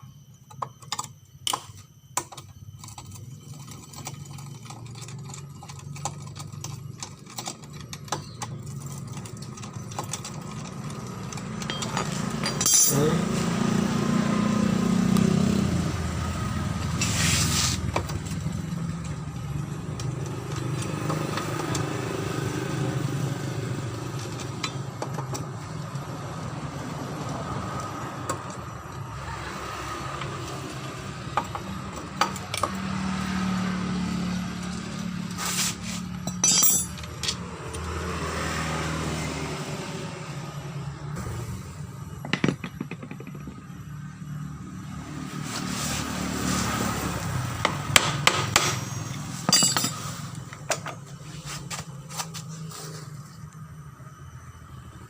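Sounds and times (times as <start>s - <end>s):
gears grinding: 0.5s - 38.7s
scooter engine running: 2.8s - 36.2s.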